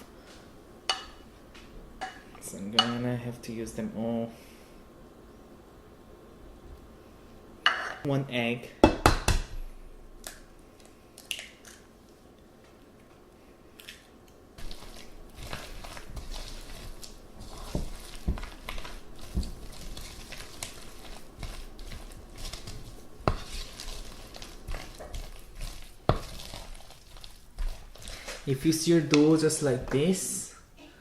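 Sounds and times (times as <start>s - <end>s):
utensil stirring batter in bowl: 14.6s - 29.4s.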